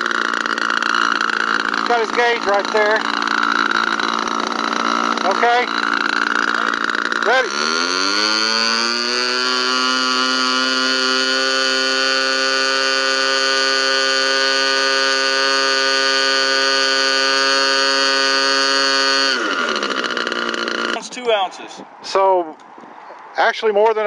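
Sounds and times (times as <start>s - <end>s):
model plane engine at full throttle: 0.0s - 21.2s.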